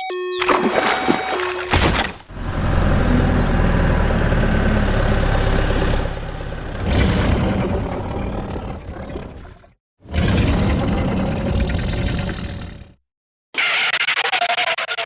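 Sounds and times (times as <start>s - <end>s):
vehicle engine rumbling: 2.2s - 7.5s.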